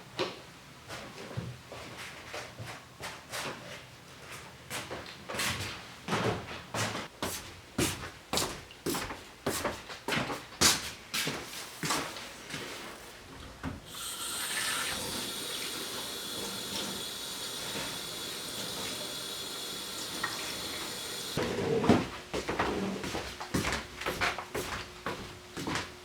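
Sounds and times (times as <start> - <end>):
tap water running into sink: 13.8 - 21.4.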